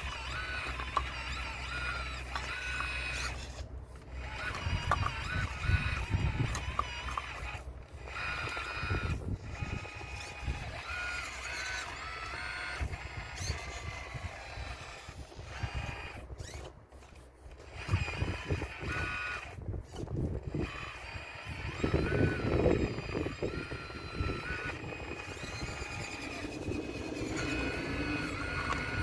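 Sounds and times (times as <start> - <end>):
model excavator motors whining: 0.0 - 29.0.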